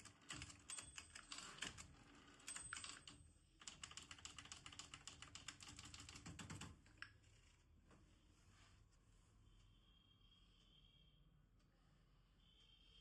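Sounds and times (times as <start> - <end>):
manual typewriter keystrokes: 0.0 - 6.9.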